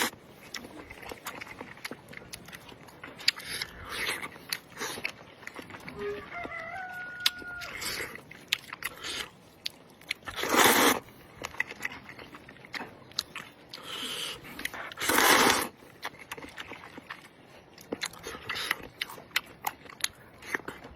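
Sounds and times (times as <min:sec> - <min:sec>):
chewing and biting clicks: 0:00.0 - 0:06.6, 0:07.2 - 0:20.9
rooster crowing faintly: 0:05.8 - 0:08.1
noodles slurped loudly: 0:10.3 - 0:11.0, 0:13.8 - 0:15.8.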